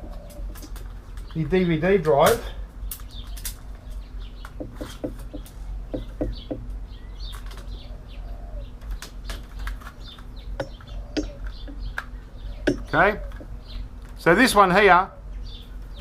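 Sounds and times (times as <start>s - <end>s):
steady low hum: 0.0s - 16.0s
computer parts clicking and knocking: 4.5s - 6.7s, 12.6s - 13.5s.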